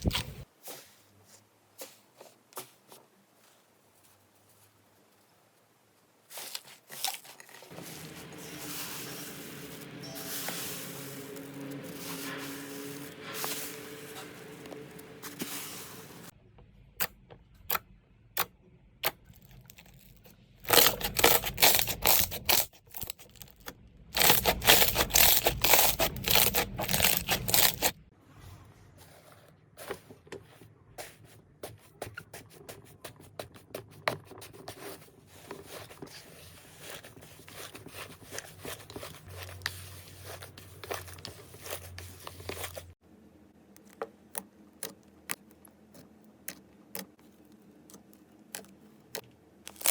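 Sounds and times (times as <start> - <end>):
slime crackling and popping: 19.0 - 27.9, 48.6 - 49.9.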